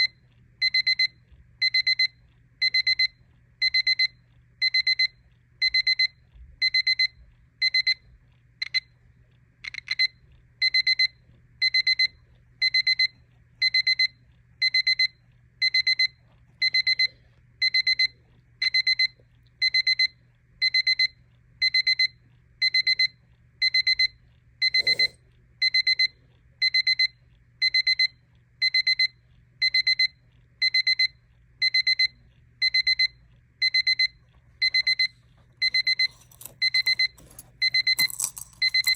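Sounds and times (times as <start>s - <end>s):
alarm clock beeping: 0.0s - 8.0s, 9.6s - 38.9s.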